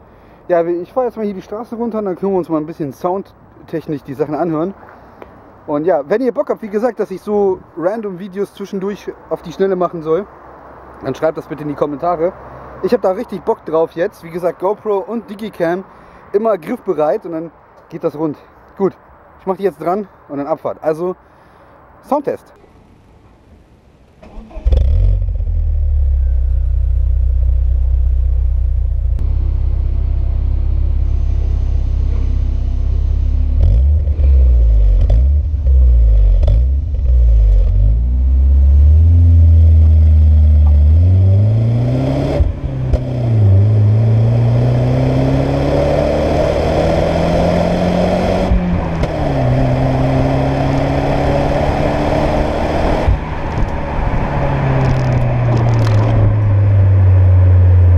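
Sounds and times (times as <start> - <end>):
car engine revving and accelerating: 29.1 - 57.9.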